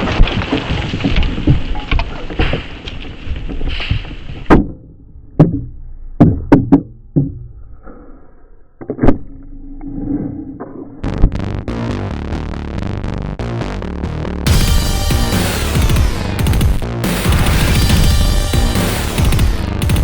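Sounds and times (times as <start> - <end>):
low rumbling noise: 14.4 - 20.0.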